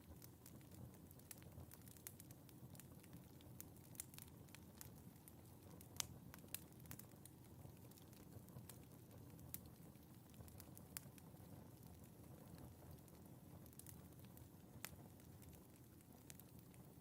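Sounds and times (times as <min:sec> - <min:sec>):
low rumble of flames: 0:00.0 - 0:17.0
wood fire crackling and popping: 0:00.0 - 0:17.0.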